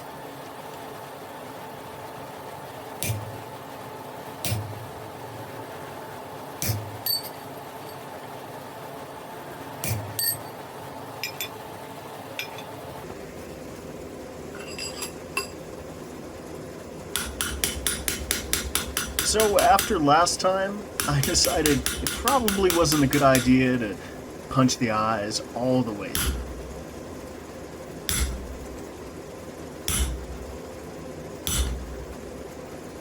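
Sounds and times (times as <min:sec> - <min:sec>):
steady hum: 0:00.0 - 0:33.0
hammer striking iron on anvil: 0:03.0 - 0:03.5, 0:04.4 - 0:04.9, 0:06.6 - 0:07.5, 0:09.8 - 0:10.6, 0:17.1 - 0:20.1, 0:21.0 - 0:23.7, 0:26.1 - 0:26.8, 0:28.0 - 0:28.7, 0:29.9 - 0:30.6, 0:31.4 - 0:32.2.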